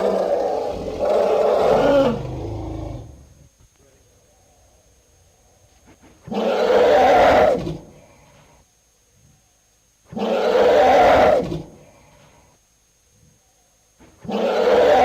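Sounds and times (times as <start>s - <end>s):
elephant roaring: 0.0s - 3.3s.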